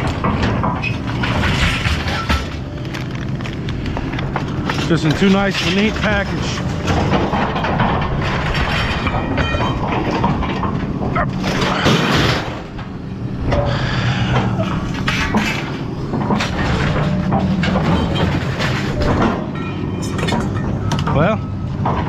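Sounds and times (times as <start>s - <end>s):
low engine rumble: 0.0s - 22.0s
scrap metal clanking: 3.8s - 13.7s, 14.3s - 22.0s.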